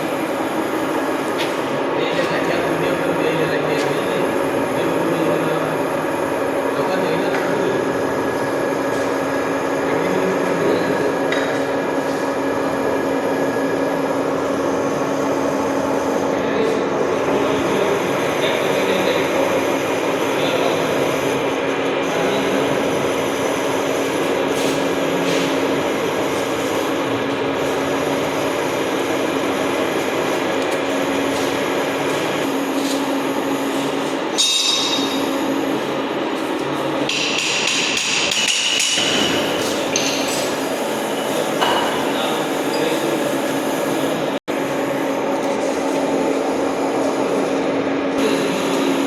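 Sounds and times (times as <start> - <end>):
lathe motor hum: 0.0 - 34.4.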